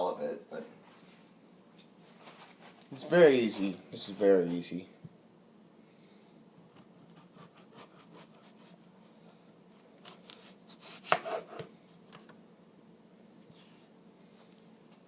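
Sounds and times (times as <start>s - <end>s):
knife cutting potato: 6.6s - 8.9s, 10.0s - 11.7s.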